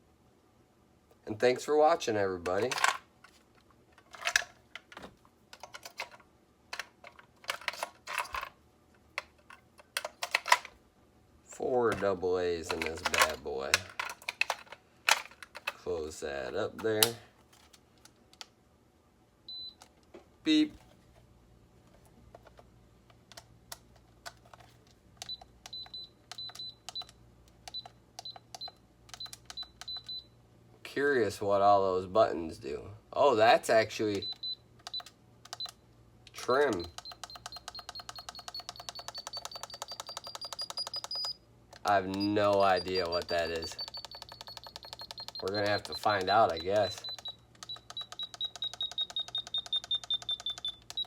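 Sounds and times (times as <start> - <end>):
plastic clicks of batteries: 34.2 - 51.0.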